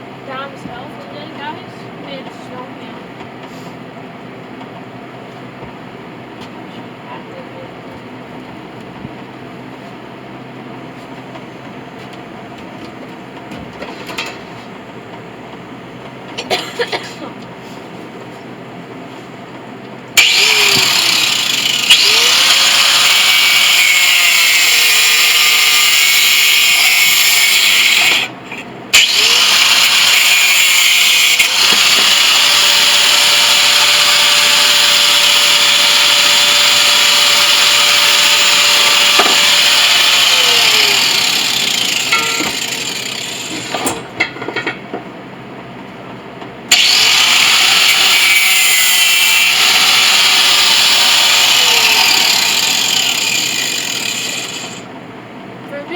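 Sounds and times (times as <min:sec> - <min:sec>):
angle grinder running: 0:20.2 - 0:44.0, 0:46.7 - 0:54.9.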